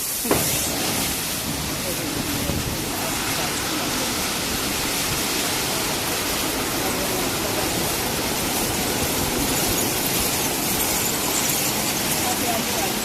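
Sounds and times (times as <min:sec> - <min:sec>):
car wash water jets hissing: 0:00.0 - 0:13.0.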